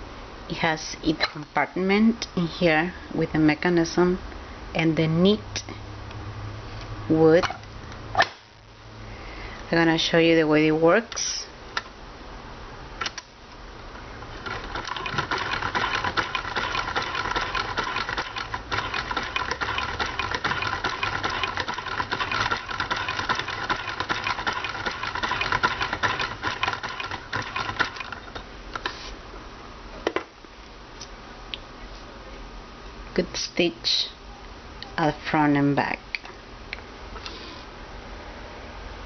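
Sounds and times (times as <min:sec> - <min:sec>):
toy sewing machine clattering: 0:14.4 - 0:28.4.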